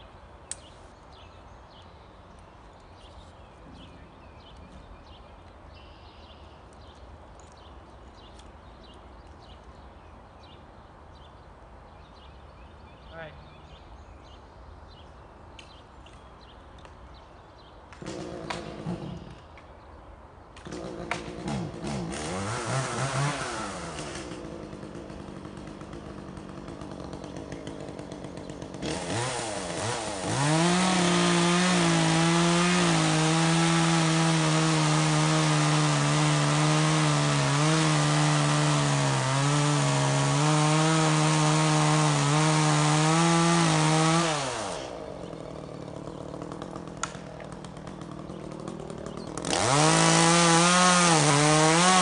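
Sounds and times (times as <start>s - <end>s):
chainsaw cutting wood: 17.9s - 19.6s, 20.6s - 52.0s
chainsaw idling: 20.6s - 52.0s.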